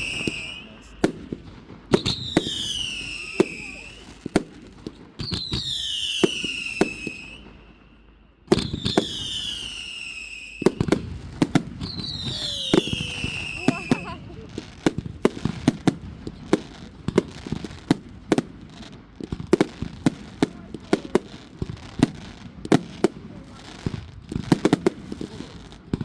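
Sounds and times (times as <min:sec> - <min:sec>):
fireworks whistling: 0:00.0 - 0:15.9
fireworks bangs: 0:00.0 - 0:26.0.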